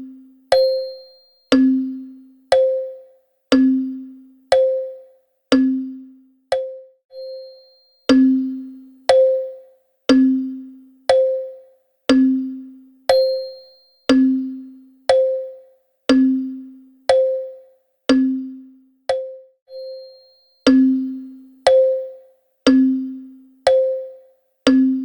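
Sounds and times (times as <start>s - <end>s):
wall clock ticking: 1.5s - 3.8s, 4.5s - 5.8s, 6.5s - 6.8s, 8.1s - 10.4s, 11.1s - 12.4s, 13.1s - 18.4s, 19.1s - 19.4s, 20.7s - 23.0s, 23.7s - 25.0s.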